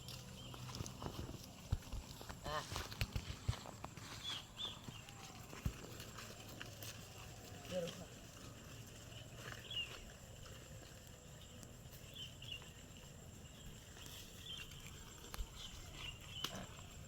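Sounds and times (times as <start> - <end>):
faint outdoor ambience: 0.0 - 17.0.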